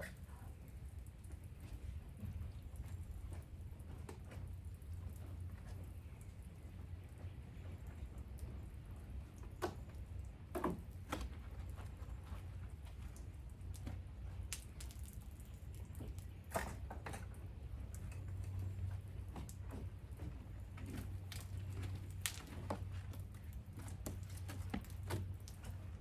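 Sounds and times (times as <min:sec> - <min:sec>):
low steady hum: 0:00.0 - 0:26.0
wet squishes and drips: 0:07.8 - 0:16.5.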